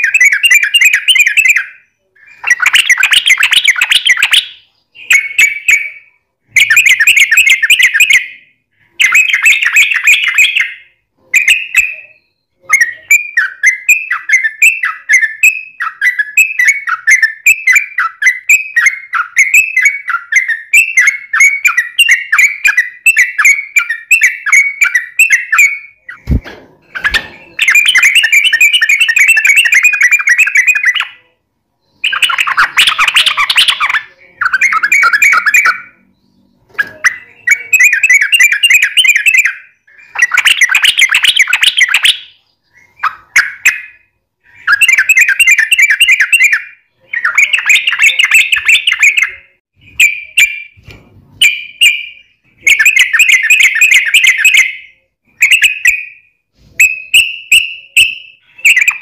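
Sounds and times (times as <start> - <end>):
bird singing chattering phrases: 0.0 - 50.8.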